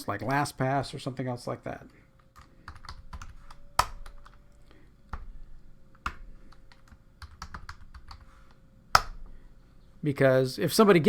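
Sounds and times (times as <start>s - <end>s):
faint steady hum: 0.0s - 11.0s
computer keyboard typing: 2.2s - 4.5s, 6.0s - 9.2s.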